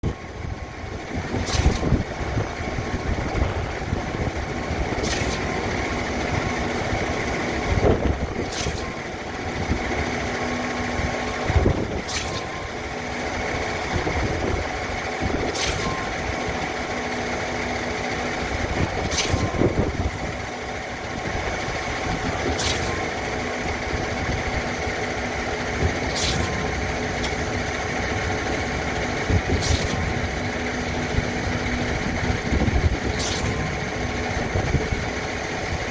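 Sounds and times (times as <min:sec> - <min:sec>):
diesel engine and hydraulic hum: 0:00.0 - 0:35.9
pump cylinder clunk and hiss: 0:01.3 - 0:02.1, 0:04.8 - 0:14.6, 0:15.2 - 0:17.3, 0:17.9 - 0:20.3, 0:21.9 - 0:35.0.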